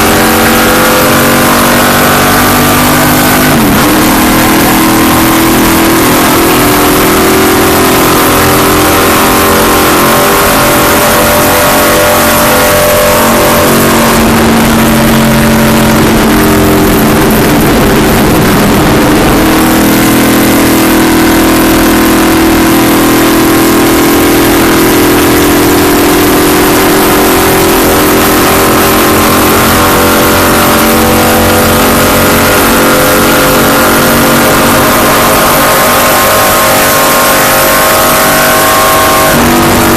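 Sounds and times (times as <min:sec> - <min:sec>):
race car engine running hard: 0:00.0 - 0:39.9.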